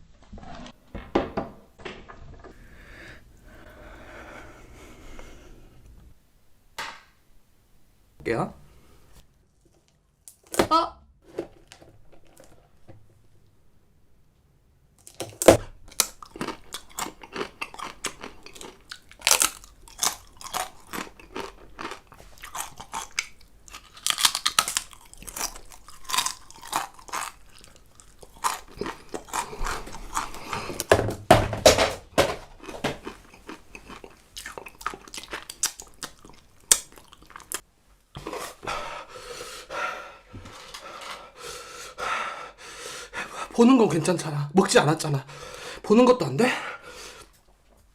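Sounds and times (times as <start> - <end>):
crunchy chewing and biting: 15.0 - 30.9, 32.6 - 37.6.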